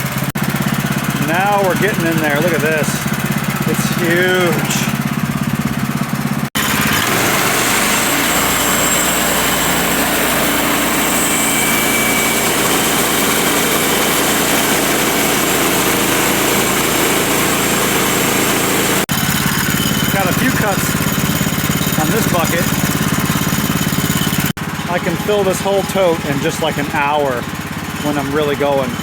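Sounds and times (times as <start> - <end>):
sawmill engine running: 0.0 - 29.0.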